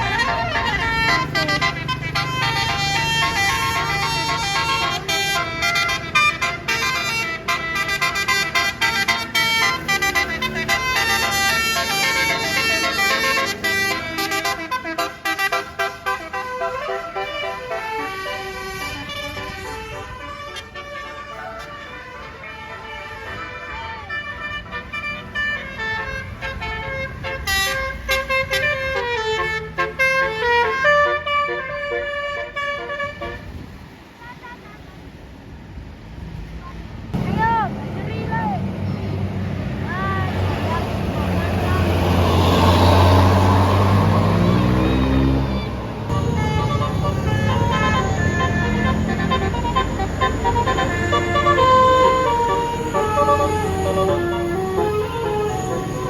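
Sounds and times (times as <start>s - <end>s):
musical air horn melody: 0.0s - 33.7s, 46.0s - 56.0s
low engine rumble: 0.0s - 56.0s.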